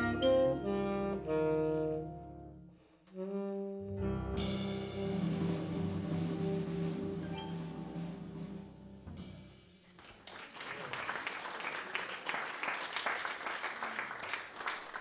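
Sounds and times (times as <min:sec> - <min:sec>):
jazz band final chord: 0:03.2 - 0:09.7
audience applause: 0:09.8 - 0:15.0.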